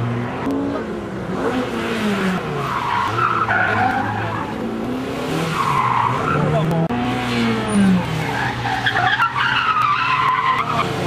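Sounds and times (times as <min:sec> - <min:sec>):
tyres squealing: 0:02.6 - 0:04.7.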